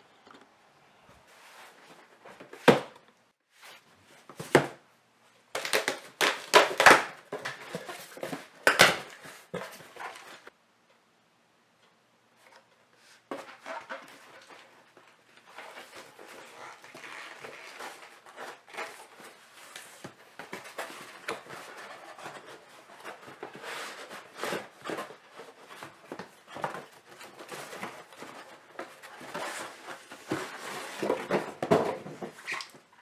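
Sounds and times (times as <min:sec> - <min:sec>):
cardboard package rustling: 0:13.3 - 0:32.8.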